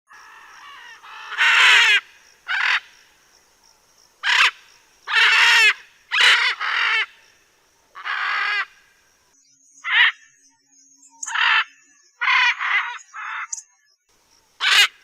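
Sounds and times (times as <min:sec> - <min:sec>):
macaw squawking: 0:00.2 - 0:03.0, 0:04.2 - 0:07.2, 0:08.0 - 0:08.8, 0:14.6 - 0:15.0.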